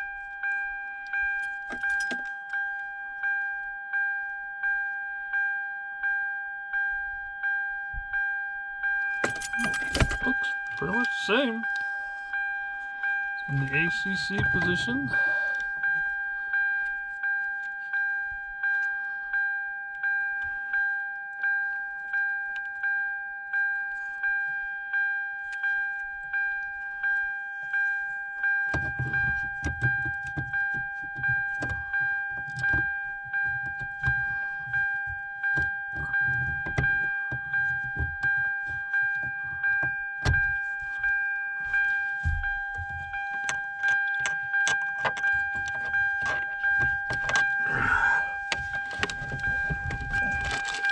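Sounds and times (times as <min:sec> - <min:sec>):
dashboard warning chime: 0:00.0 - 0:50.9
keys rattling: 0:01.3 - 0:02.4, 0:09.1 - 0:12.2, 0:13.4 - 0:16.2, 0:28.7 - 0:50.9.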